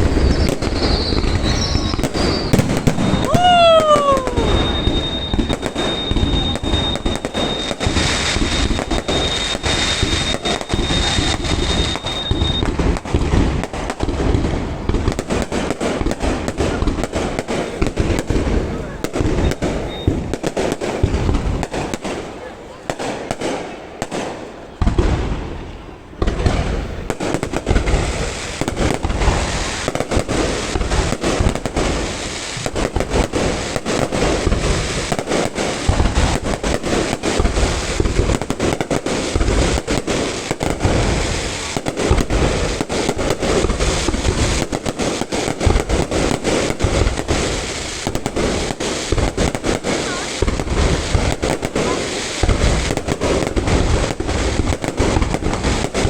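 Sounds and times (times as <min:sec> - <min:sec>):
fireworks bangs and crackles: 0:00.0 - 0:56.0.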